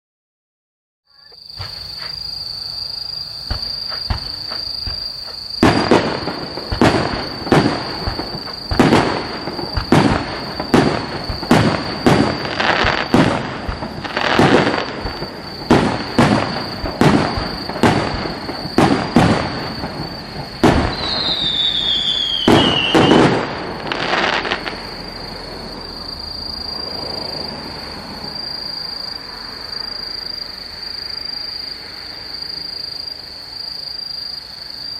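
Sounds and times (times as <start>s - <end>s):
crickets trilling: 1.1s - 34.9s
firework bangs: 1.5s - 2.3s, 3.3s - 28.9s
firework whistle: 3.4s - 29.3s.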